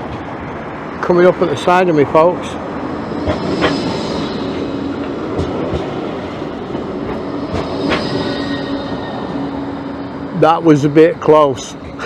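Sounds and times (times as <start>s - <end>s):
tram rolling hum: 0.0s - 12.0s
wheels clacking over rail joints: 1.5s - 9.9s.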